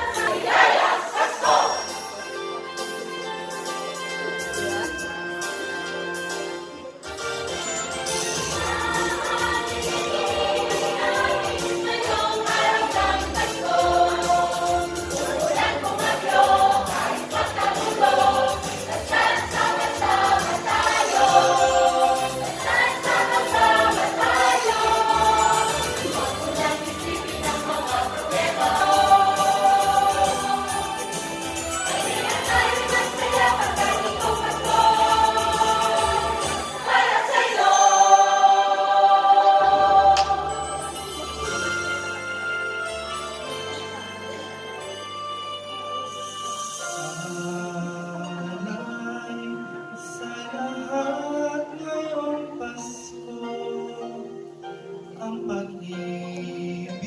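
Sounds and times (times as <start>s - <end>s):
choir singing a carol: 0.0s - 2.4s, 8.2s - 42.3s.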